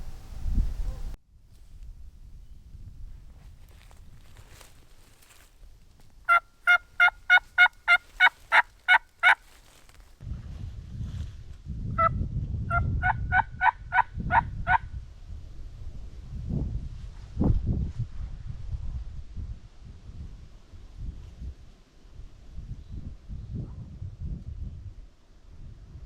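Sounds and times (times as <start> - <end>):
turkey yelping: 6.3 - 9.5, 13.0 - 14.8.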